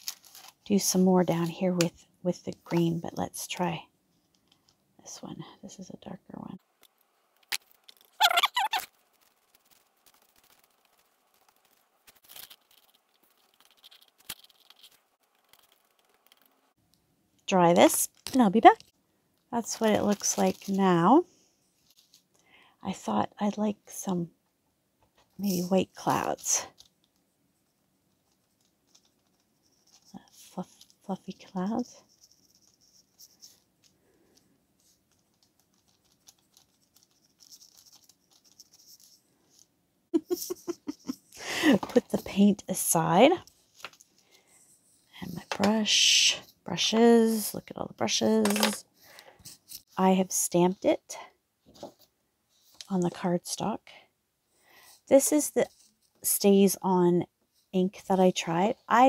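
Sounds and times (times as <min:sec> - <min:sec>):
faint scratching: 0:06.8 - 0:16.8, 0:27.6 - 0:39.7
paintbrush dabbing on paper: 0:07.6 - 0:16.8, 0:34.8 - 0:39.6.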